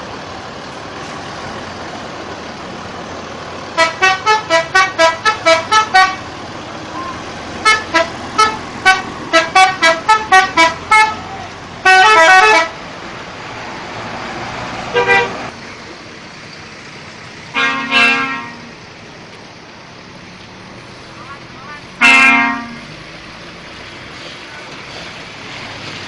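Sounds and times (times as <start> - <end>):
road traffic noise: 0.0 - 26.0
musical bus horn toots: 3.8 - 6.3, 6.9 - 12.8, 14.9 - 15.5, 17.5 - 18.7, 22.0 - 22.9.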